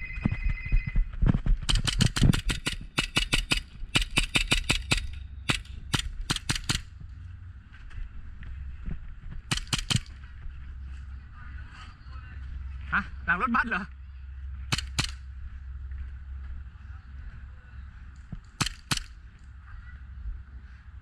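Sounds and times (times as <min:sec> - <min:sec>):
airsoft guns firing: 0:01.6 - 0:06.9, 0:09.5 - 0:10.1, 0:14.7 - 0:15.2, 0:18.6 - 0:19.2.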